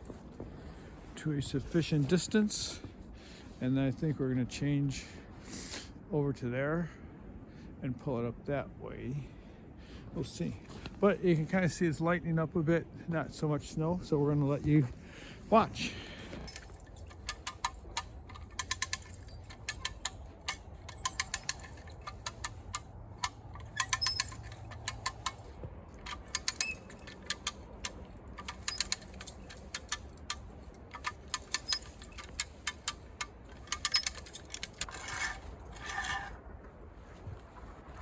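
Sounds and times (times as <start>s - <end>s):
ratchet winch clicking: 16.2s - 36.4s.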